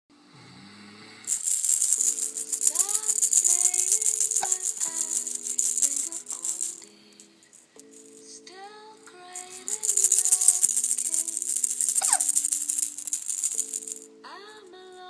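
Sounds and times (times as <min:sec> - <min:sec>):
rattle shaken quickly: 0:01.3 - 0:06.9, 0:07.5 - 0:08.3, 0:09.4 - 0:14.1.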